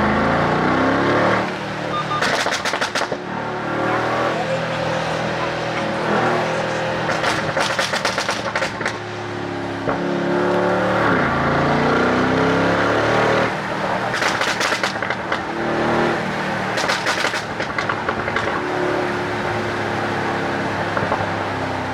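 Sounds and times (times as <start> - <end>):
car engine revving: 0.0 - 21.9
exhaust crackling and popping: 1.1 - 11.4, 13.5 - 19.4, 20.8 - 21.6.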